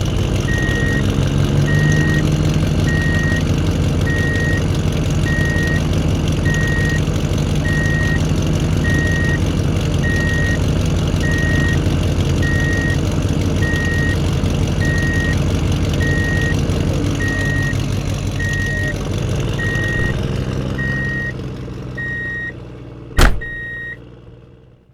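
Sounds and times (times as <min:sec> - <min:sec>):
truck engine running: 0:00.0 - 0:24.9
reversing alarm beeping: 0:00.5 - 0:02.3, 0:02.9 - 0:03.4, 0:04.1 - 0:04.6, 0:05.3 - 0:05.8, 0:06.5 - 0:07.0, 0:07.6 - 0:08.2, 0:08.8 - 0:09.4, 0:10.0 - 0:10.6, 0:11.2 - 0:11.8, 0:12.4 - 0:13.0, 0:13.6 - 0:14.2, 0:14.8 - 0:15.4, 0:16.0 - 0:16.6, 0:17.2 - 0:17.8, 0:18.4 - 0:19.0, 0:19.6 - 0:20.2, 0:20.8 - 0:21.4, 0:22.0 - 0:22.6, 0:23.4 - 0:24.0.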